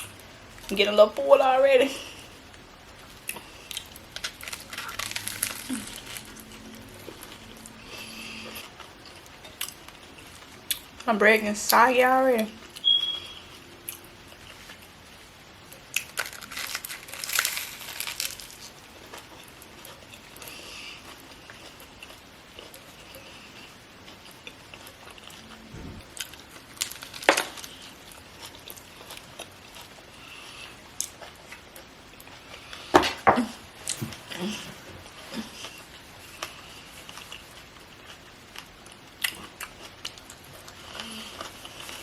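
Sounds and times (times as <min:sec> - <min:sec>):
chewing: 0:03.1 - 0:11.0, 0:15.7 - 0:32.9, 0:33.8 - 0:42.0
crunchy bites: 0:03.2 - 0:07.6, 0:15.9 - 0:19.3, 0:24.8 - 0:29.5
wrapper crinkling: 0:03.7 - 0:07.4, 0:16.0 - 0:18.8, 0:26.2 - 0:28.0.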